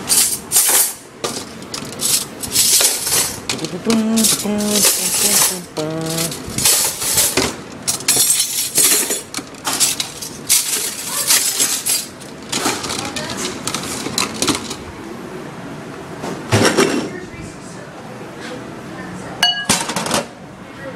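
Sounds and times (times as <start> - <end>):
dishes clattering and clinking: 0.0 - 14.8, 16.2 - 17.1, 19.4 - 20.3.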